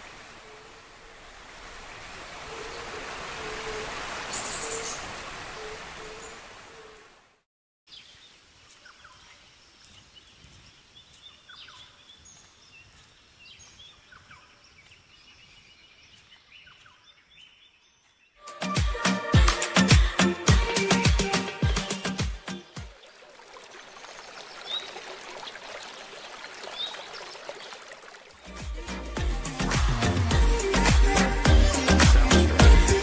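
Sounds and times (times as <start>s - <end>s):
waterfall rushing: 0.0s - 6.6s.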